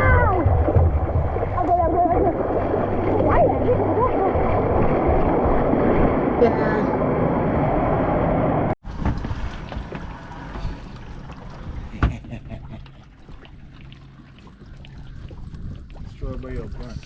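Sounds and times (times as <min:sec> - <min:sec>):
low boat ambience: 0:00.0 - 0:05.1, 0:06.3 - 0:17.0
water-slide rushing noise: 0:00.0 - 0:08.7.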